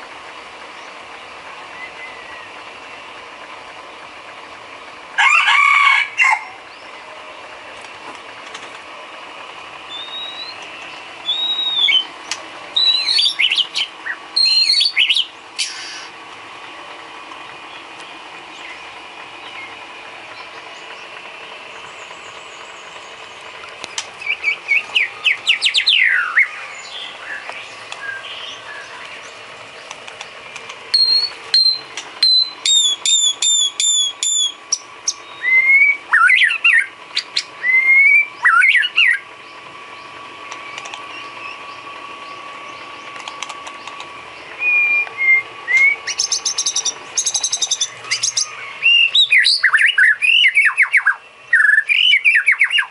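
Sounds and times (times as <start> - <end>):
bird singing whistled phrases: 9.9 - 12.1, 12.8 - 15.9, 24.2 - 29.0, 30.9 - 39.2, 44.6 - 52.9.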